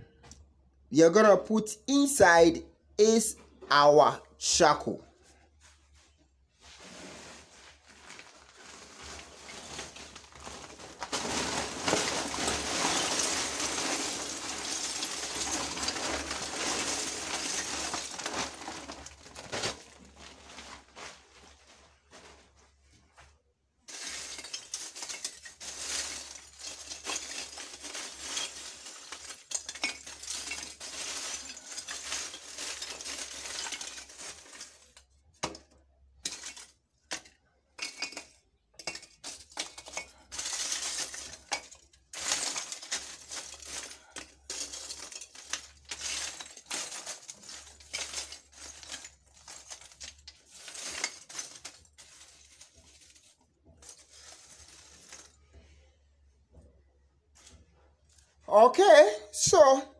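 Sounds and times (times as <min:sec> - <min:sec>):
charcoal pieces clinking: 0:08.1 - 0:19.9, 0:23.9 - 0:55.5.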